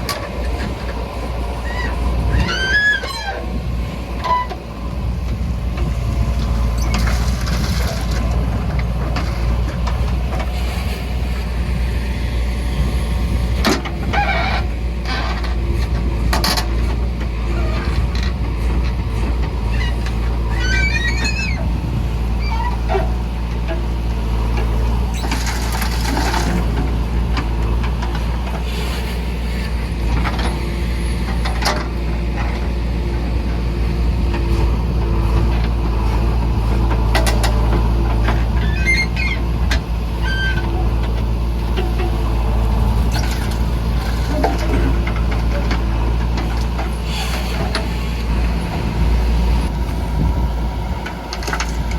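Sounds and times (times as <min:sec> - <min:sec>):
diesel engine running: 0:00.0 - 0:51.9.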